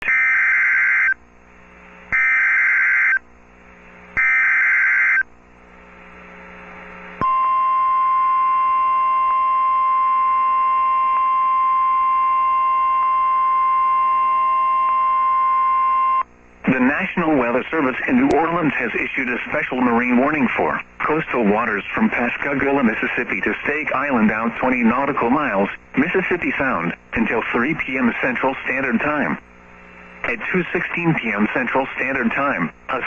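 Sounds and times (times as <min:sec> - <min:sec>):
steady alarm tone: 0:00.0 - 0:01.2, 0:02.1 - 0:03.2, 0:04.2 - 0:05.3, 0:07.2 - 0:16.2.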